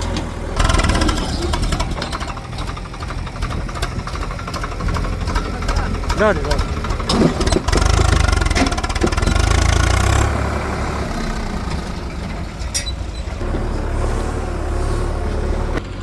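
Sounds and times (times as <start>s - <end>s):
heavy diesel engine rumbling: 0.0s - 16.0s.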